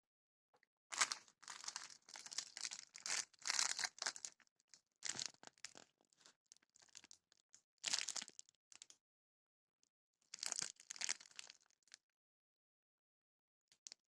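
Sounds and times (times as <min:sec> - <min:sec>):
plastic packaging crinkling: 0:01.0 - 0:04.3.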